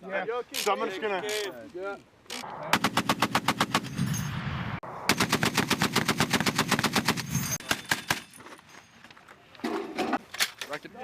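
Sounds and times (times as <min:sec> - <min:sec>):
machine gun firing bursts: 0:02.8 - 0:04.0, 0:05.1 - 0:08.3.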